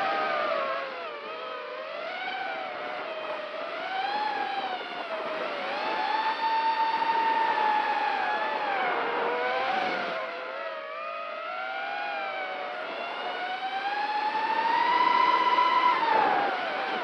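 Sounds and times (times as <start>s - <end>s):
quadcopter motors whining: 12.4s - 17.0s.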